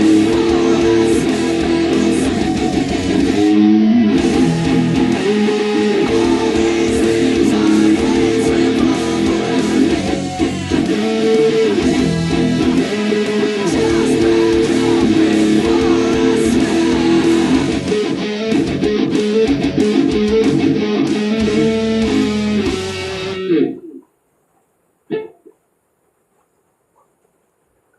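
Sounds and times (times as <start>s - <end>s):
electric guitar strummed: 0.0s - 24.0s.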